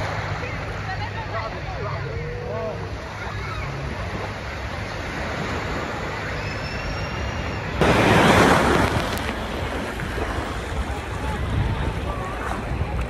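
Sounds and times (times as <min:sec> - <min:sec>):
motorboat engine rumbling: 0:00.0 - 0:13.0
rushing water and wind: 0:00.0 - 0:13.0.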